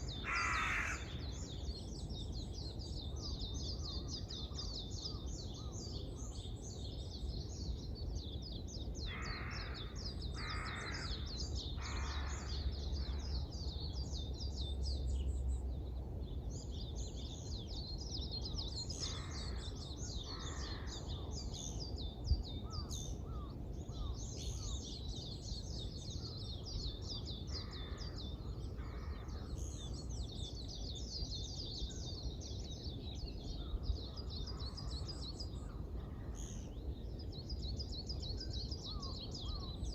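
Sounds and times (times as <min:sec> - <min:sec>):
small birds chirping: 0:00.0 - 0:39.9
crow cawing: 0:00.2 - 0:01.2, 0:09.1 - 0:11.2, 0:11.8 - 0:12.6.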